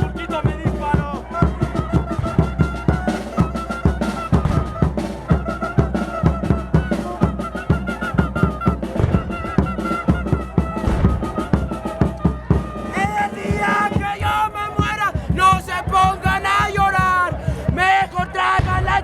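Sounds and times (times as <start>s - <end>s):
bass drum and snare beat: 0.0s - 19.0s
high wind instrument melody: 1.1s - 16.3s.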